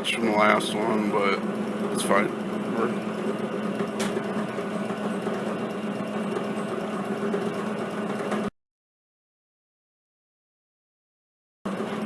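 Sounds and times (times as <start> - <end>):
drill press motor hum: 0.0 - 8.5, 11.7 - 12.0.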